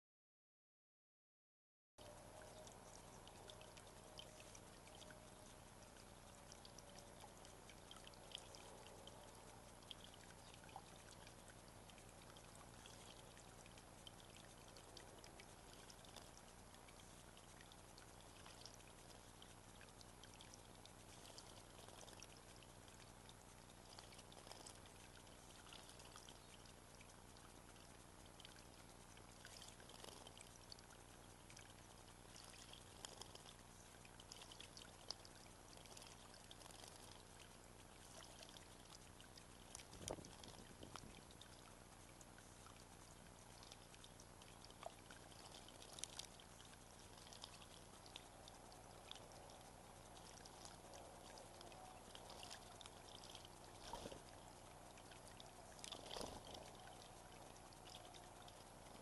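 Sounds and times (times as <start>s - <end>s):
water trickling in basin: 2.0s - 59.0s
small water splashes: 2.4s - 59.0s.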